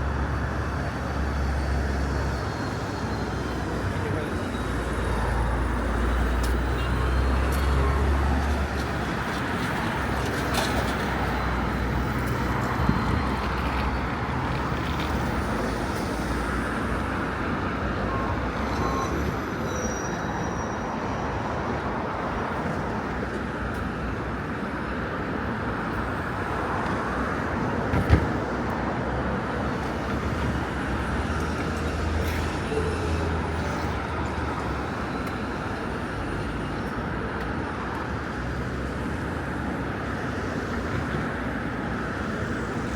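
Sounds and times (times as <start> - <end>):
road traffic rumble: 0.0 - 42.9.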